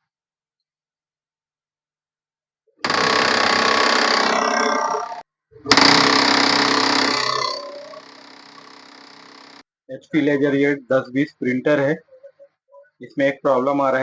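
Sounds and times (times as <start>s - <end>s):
printer gears grinding rattle: 2.8s - 9.6s.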